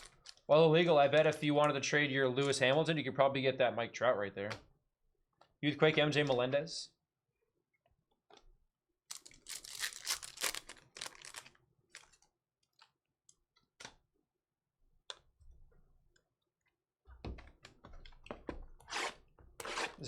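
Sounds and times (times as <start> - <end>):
foil wrapper crinkling: 0.0 - 0.4, 9.1 - 12.8
cards clicking and rustling: 9.1 - 13.0.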